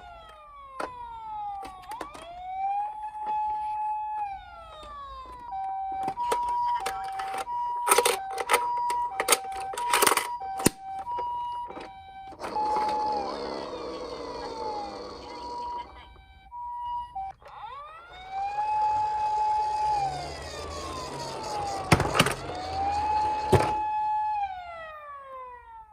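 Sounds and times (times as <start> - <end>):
ambulance two-tone siren: 0.0 - 25.9
police car siren wailing: 0.0 - 25.9
rushing rolling noise: 18.1 - 24.0.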